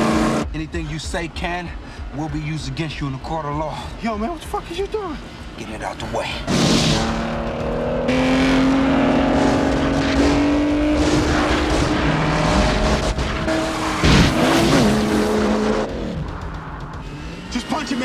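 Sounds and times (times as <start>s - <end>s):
car engines revving: 0.0s - 18.0s
loud noisy burst: 6.5s - 18.0s.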